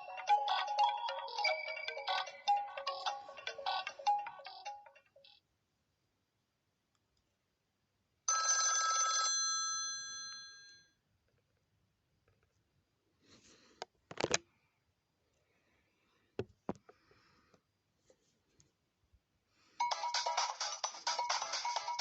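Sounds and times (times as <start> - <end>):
phone ringtone melody: 0.0 - 5.4, 19.8 - 22.0.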